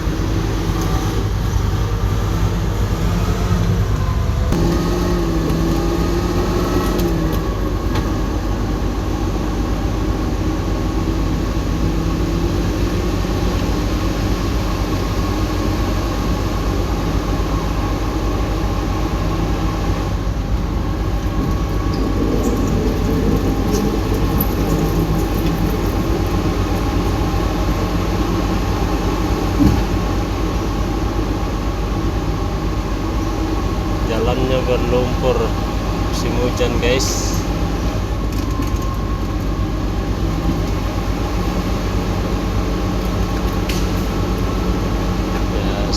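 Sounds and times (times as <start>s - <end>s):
bulldozer diesel engine running: 0.0s - 45.9s.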